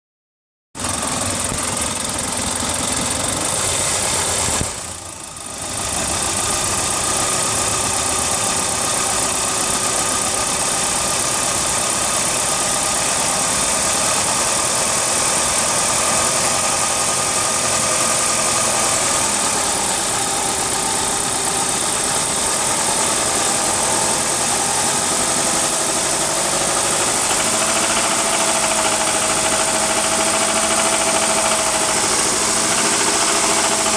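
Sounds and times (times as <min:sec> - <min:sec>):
car engine running: 0:00.8 - 0:33.9
engine knocking: 0:00.8 - 0:33.9.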